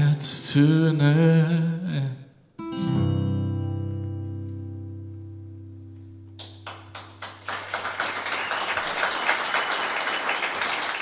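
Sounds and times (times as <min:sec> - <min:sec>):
acoustic guitar chord ringing: 0:02.6 - 0:07.0
audience applause: 0:06.4 - 0:11.0.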